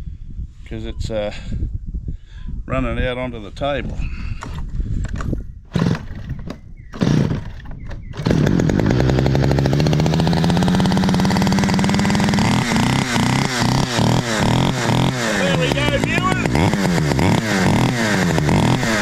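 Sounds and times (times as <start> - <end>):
chainsaw pull-starting and running: 4.4 - 19.0.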